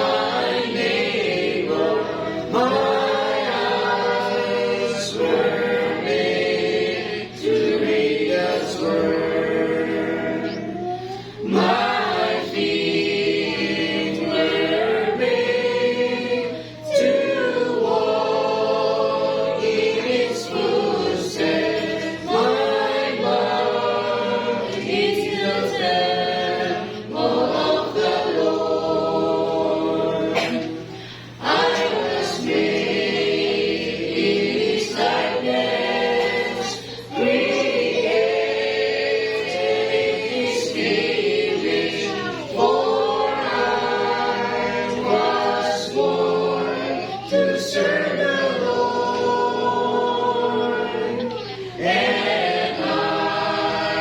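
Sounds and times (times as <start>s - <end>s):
congregation singing a hymn: 0.0s - 54.0s.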